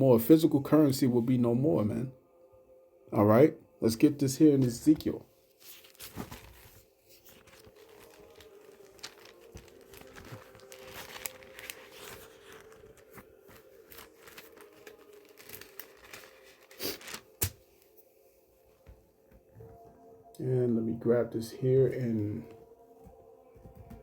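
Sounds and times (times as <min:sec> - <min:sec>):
rustling and crinkling handling: 0:04.6 - 0:19.9.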